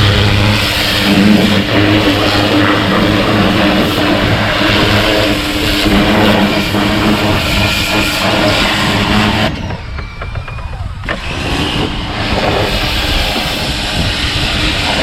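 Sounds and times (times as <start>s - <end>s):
water spray hissing: 0.0s - 9.5s
pressure washer motor hum: 0.0s - 9.9s, 10.8s - 15.0s.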